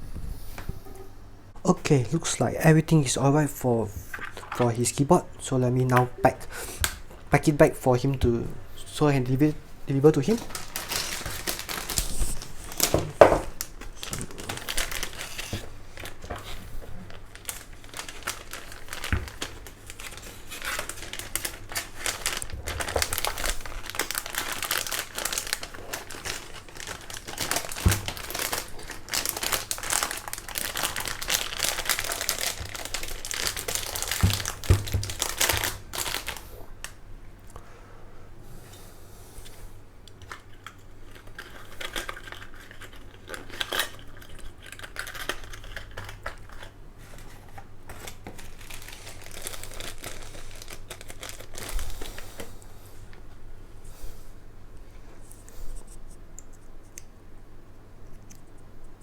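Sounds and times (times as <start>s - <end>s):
packaging rustling and crumpling: 9.3s - 37.0s, 40.3s - 52.6s.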